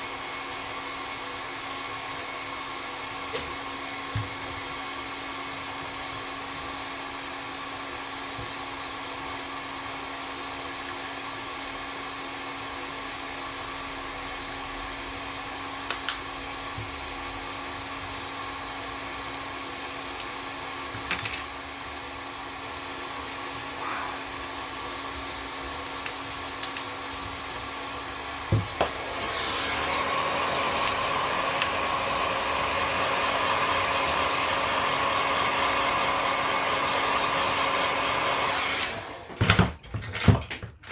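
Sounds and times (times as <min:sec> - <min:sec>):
hot-air gun blowing: 0:23.4 - 0:39.1.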